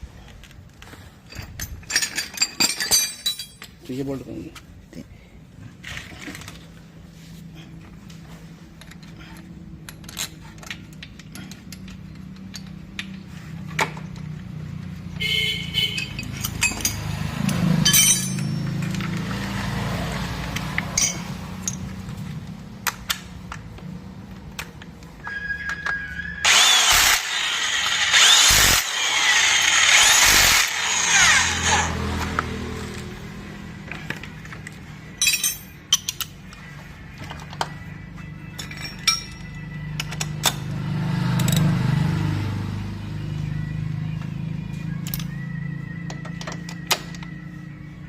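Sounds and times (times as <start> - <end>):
tools clanking on metal: 1.2 - 4.0, 15.8 - 19.3, 20.6 - 23.6, 33.9 - 37.7, 38.5 - 40.6
loud harsh noise: 26.3 - 32.0.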